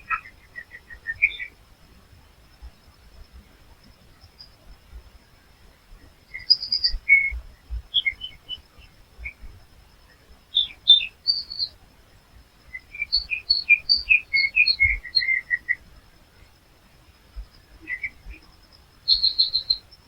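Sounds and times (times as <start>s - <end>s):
songbirds chirping and singing: 0.0s - 1.6s, 6.3s - 9.5s, 10.4s - 11.8s, 12.6s - 15.8s, 17.6s - 19.9s
faint steady high tone: 0.0s - 20.0s.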